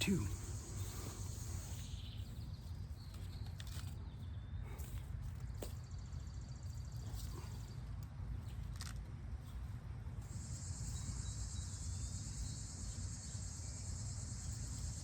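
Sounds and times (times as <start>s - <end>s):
insects chirring: 0.0s - 2.7s, 10.2s - 15.0s.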